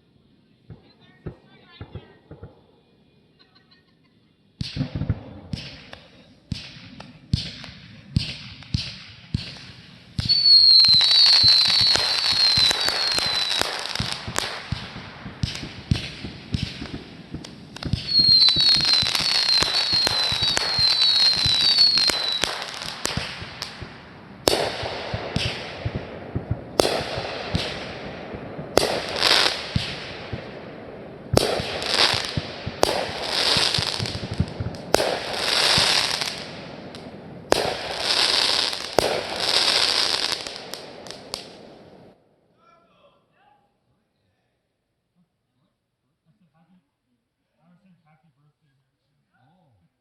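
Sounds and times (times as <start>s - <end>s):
fireworks bangs: 0.7s - 3.4s, 4.5s - 42.2s
fireworks crackling: 0.7s - 3.8s, 4.6s - 42.2s
fireworks whistling: 4.6s - 42.2s.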